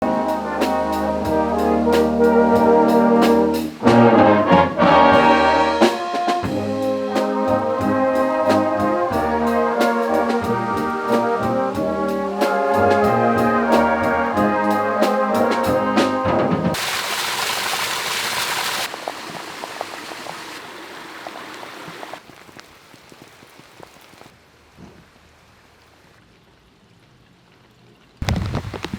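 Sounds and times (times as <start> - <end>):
brass intro music: 0.0 - 16.8
steady beat: 0.0 - 16.8.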